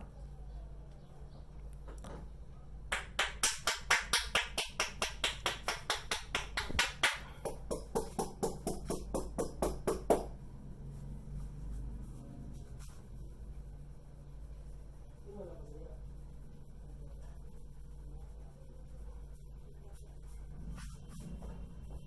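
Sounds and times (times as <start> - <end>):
hands slapping head rhythmically: 2.9 - 10.3.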